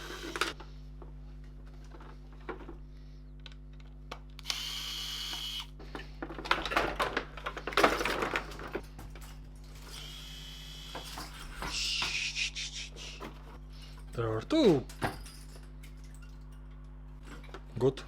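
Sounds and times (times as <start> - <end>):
small power tool whirring: 0.0 - 0.6, 4.4 - 5.8, 9.8 - 12.0
metal and plastic parts clattering: 5.8 - 10.1.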